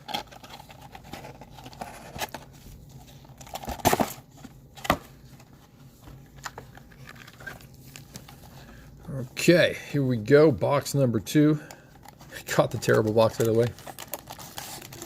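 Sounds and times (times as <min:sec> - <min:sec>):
packaging crinkling and tearing: 0:00.0 - 0:04.2, 0:12.0 - 0:15.0.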